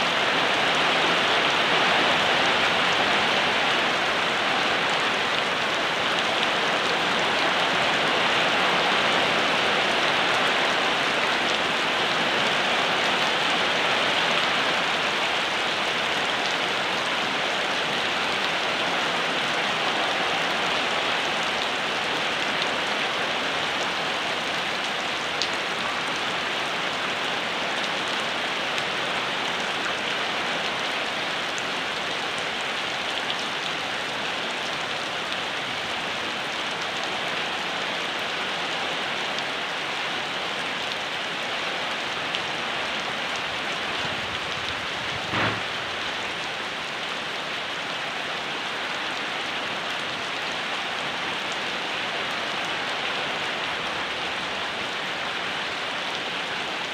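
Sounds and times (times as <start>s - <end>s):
steady rain falling: 0.0s - 56.9s
dull thump: 45.3s - 45.7s.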